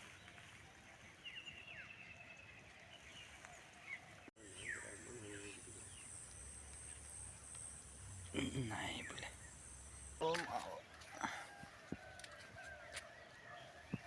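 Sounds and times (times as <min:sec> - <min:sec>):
bird chirps: 0:04.4 - 0:10.5
high insect buzz: 0:04.5 - 0:10.3.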